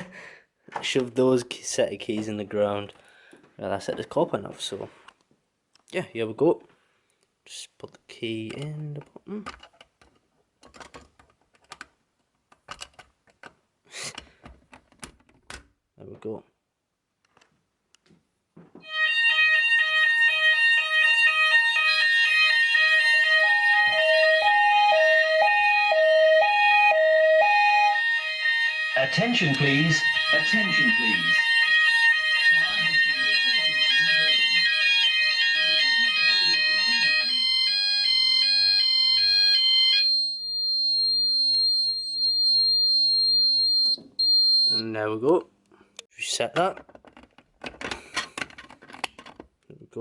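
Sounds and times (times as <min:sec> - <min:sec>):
electronic fire alarm tone: 0:18.8 - 0:44.8.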